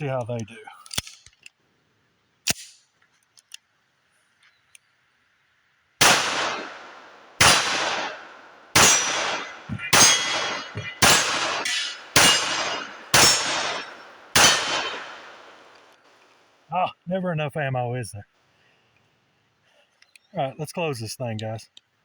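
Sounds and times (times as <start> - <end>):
pistol shots: 6.0 - 15.8
steel target ringing: 7.4 - 15.7.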